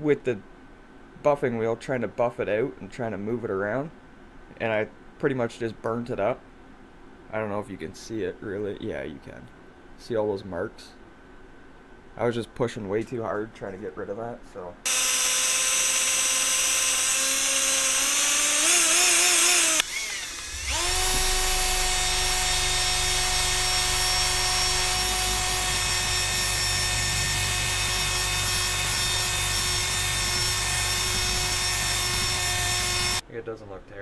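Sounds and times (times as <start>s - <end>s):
buffing wheel motor whining: 14.9s - 33.2s.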